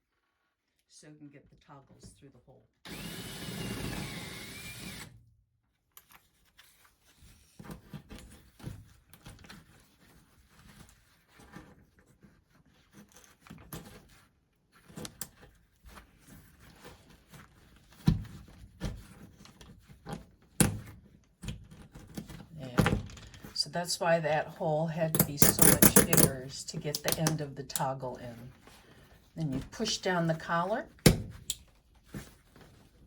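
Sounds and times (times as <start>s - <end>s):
power drill whining: 2.9s - 5.1s.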